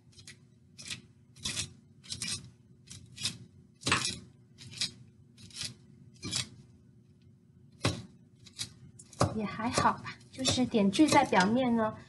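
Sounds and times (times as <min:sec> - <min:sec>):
knife chopping on cutting board: 0:00.8 - 0:06.6, 0:07.8 - 0:11.7.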